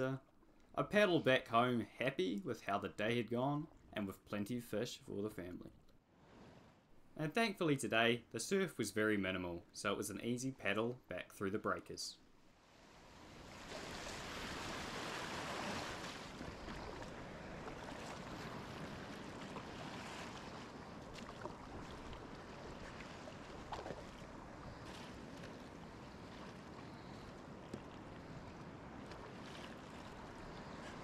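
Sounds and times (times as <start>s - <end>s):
wind: 0.0s - 31.0s
sea water washing: 12.9s - 31.0s.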